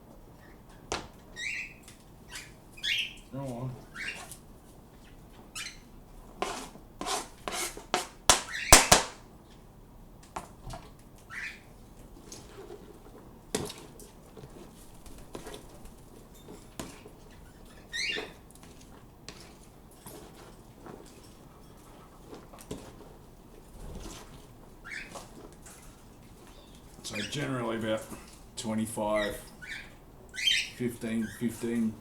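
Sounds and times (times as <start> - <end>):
small birds calling: 0.3 - 4.4, 8.3 - 9.1, 11.2 - 11.8, 17.3 - 18.4, 24.8 - 25.4, 26.4 - 32.0.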